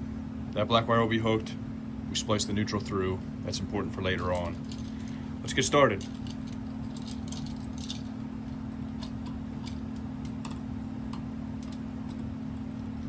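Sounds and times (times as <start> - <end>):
steady low hum: 0.0 - 13.0
wire and tools rattling: 2.7 - 13.0.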